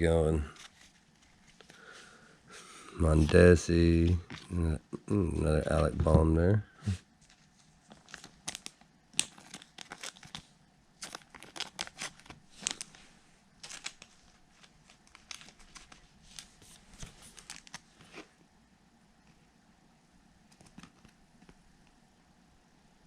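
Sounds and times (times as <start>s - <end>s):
wrappers and cards crinkling: 0.4s - 4.6s, 7.2s - 18.3s.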